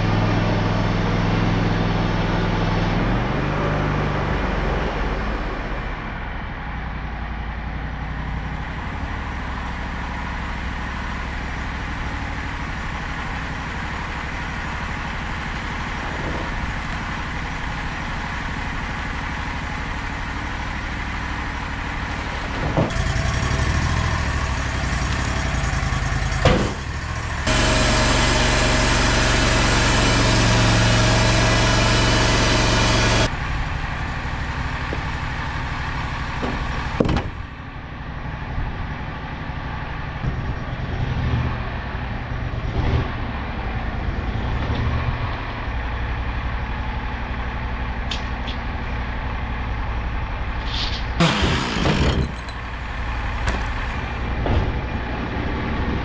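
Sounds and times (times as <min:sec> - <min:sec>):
sawmill engine running: 0:00.0 - 0:38.2, 0:43.2 - 0:56.0
saw blade whine cutting log: 0:13.2 - 0:33.3, 0:50.7 - 0:54.3
sharp knocks: 0:53.4 - 0:54.8.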